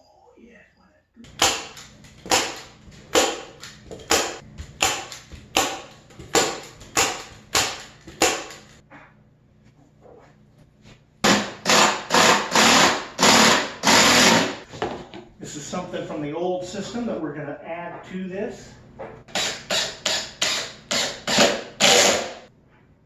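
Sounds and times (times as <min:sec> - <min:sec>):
hammer striking wood: 0:01.3 - 0:08.7, 0:11.2 - 0:14.5.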